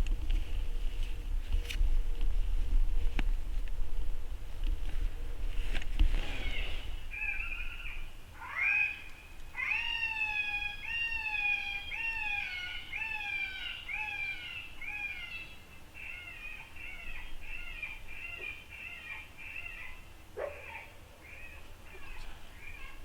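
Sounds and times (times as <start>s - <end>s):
predator call wailing cries: 6.4s - 20.0s.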